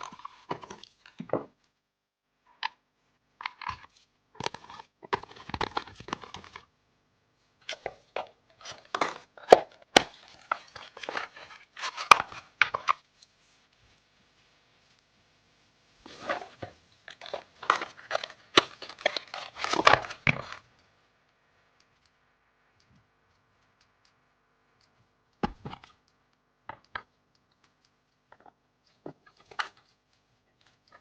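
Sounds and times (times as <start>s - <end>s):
packaging being torn and crinkled: 17.1s - 20.6s.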